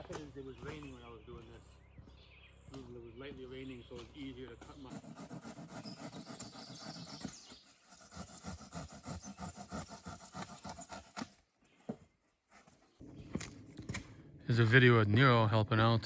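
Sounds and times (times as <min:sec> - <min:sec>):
rhythmic squeaky scraping: 0:03.2 - 0:11.4.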